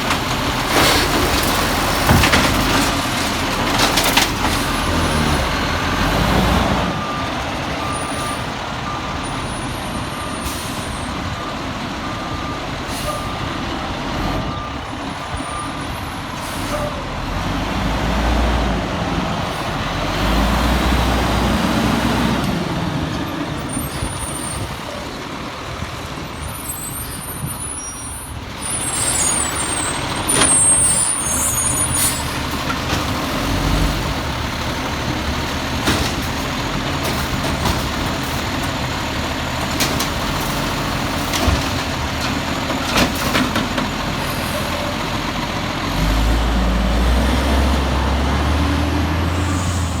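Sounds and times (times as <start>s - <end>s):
diesel engine running: 0.0s - 50.0s.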